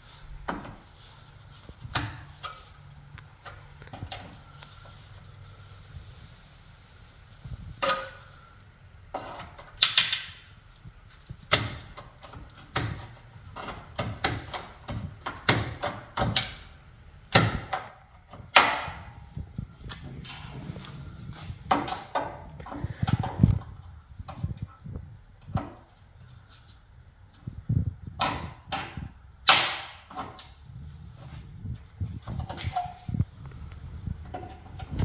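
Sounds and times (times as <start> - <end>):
metal parts knocking and clanking: 7.8 - 8.5, 9.1 - 10.6.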